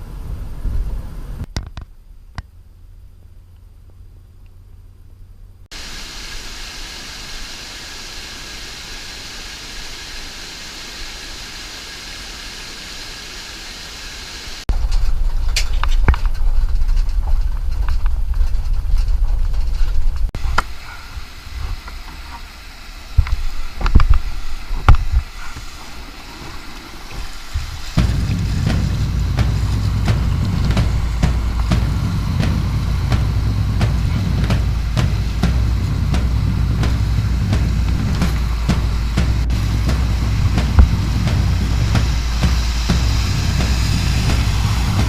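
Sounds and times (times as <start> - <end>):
wind buffeting microphone: 0.0 - 1.5, 14.7 - 22.4, 23.1 - 45.0
whitewater rapids rushing: 20.4 - 45.0
knocks and splashes: 25.9 - 45.0.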